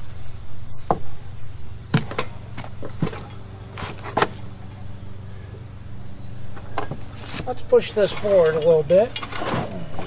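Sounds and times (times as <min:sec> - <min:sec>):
crickets chirring: 0:00.0 - 0:10.0
steady low hum: 0:00.0 - 0:10.0.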